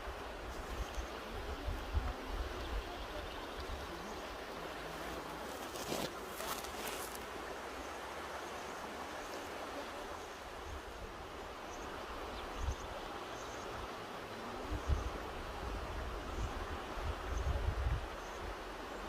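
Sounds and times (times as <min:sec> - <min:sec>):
river rushing over rocks: 0:00.0 - 0:19.0.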